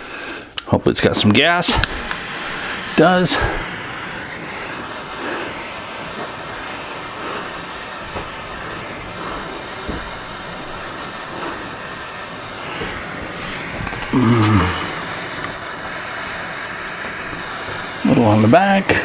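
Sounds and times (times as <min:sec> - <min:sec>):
butane torch hissing: 0:00.0 - 0:19.0.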